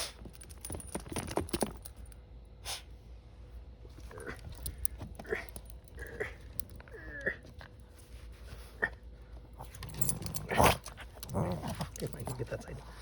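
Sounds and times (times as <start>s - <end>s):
dogs scuffling clicks and rustles: 0.2s - 2.2s, 9.6s - 12.8s.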